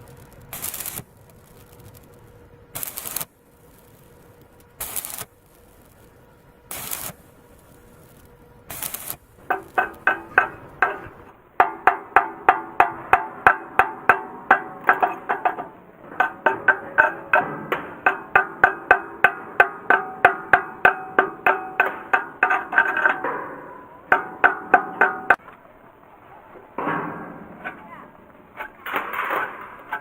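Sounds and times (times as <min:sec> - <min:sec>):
short bursts of hiss: 0:00.0 - 0:11.3.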